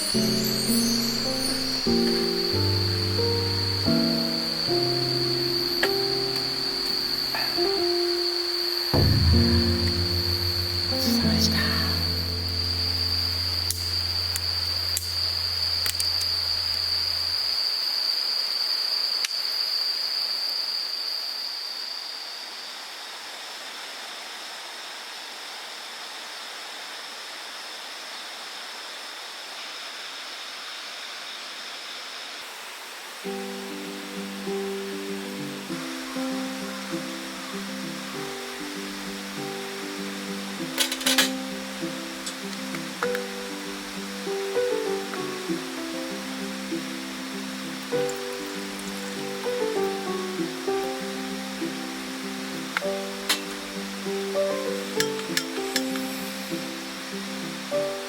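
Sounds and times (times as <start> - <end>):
acoustic guitar chords: 0.0 - 14.4
soft even hiss: 0.0 - 21.3, 32.4 - 58.0
insects trilling: 0.0 - 24.9, 29.6 - 58.0
low held music note: 5.2 - 15.6.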